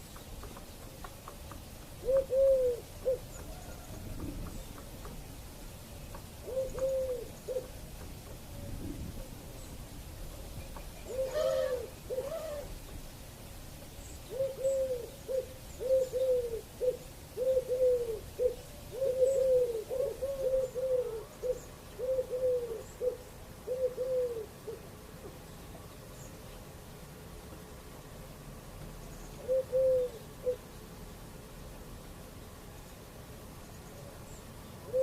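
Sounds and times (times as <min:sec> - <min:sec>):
dove cooing: 0:00.0 - 0:05.2, 0:06.1 - 0:08.0, 0:10.6 - 0:12.8, 0:14.3 - 0:25.4, 0:29.4 - 0:30.7, 0:34.8 - 0:35.0.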